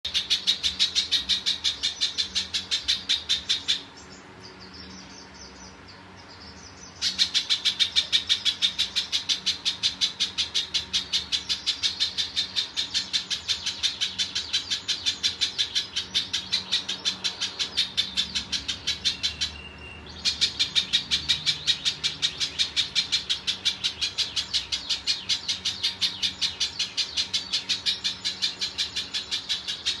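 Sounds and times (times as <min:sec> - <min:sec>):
bird calling sharp repeated notes: 0:00.1 - 0:05.9, 0:06.9 - 0:30.0.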